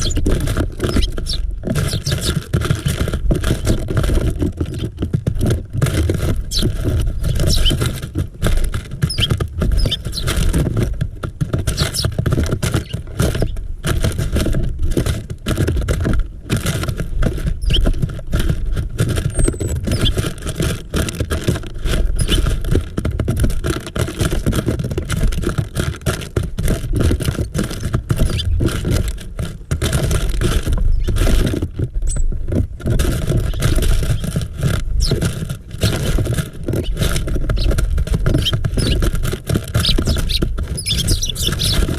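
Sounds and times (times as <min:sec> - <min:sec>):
small birds chirping: 0:00.0 - 0:02.9, 0:06.4 - 0:07.9, 0:09.0 - 0:10.4, 0:11.7 - 0:12.1, 0:12.7 - 0:13.6, 0:17.6 - 0:17.9, 0:19.3 - 0:20.2, 0:22.2 - 0:22.4, 0:28.2 - 0:28.6, 0:30.9 - 0:31.2, 0:35.0 - 0:35.2, 0:36.8 - 0:39.1, 0:39.8 - 0:41.9
knocks and scratches on feeder: 0:00.0 - 0:41.9
wind rumbling on microphone: 0:00.0 - 0:41.9.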